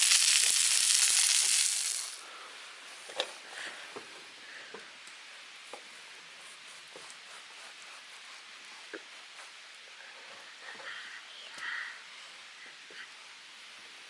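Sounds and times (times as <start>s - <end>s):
campfire pops and crackles: 0.0s - 2.2s
meat sizzling in a skillet: 0.0s - 2.2s.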